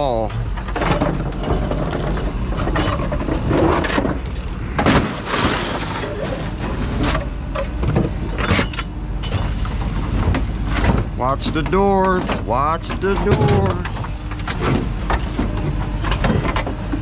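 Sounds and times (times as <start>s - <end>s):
metal crashes and clangs: 0.0s - 7.2s
steady low rumble: 0.0s - 17.0s.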